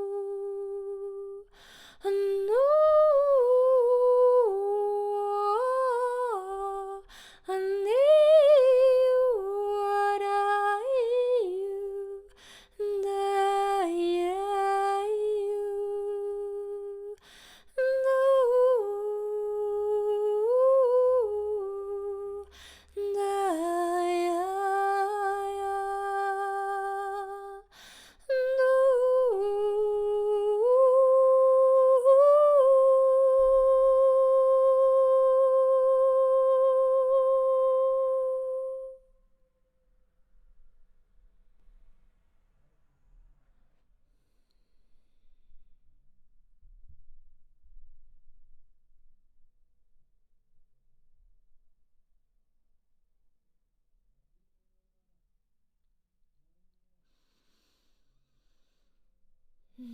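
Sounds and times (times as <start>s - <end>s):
woman humming a slow melody: 28.3s - 39.1s.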